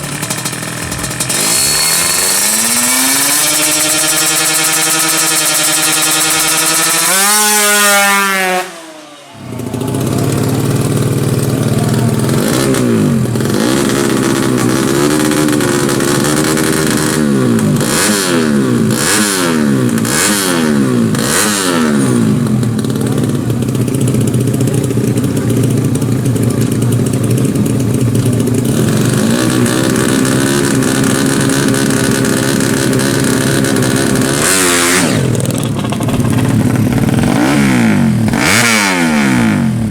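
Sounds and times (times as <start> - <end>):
motorcycle engines revving: 0.0 - 39.9.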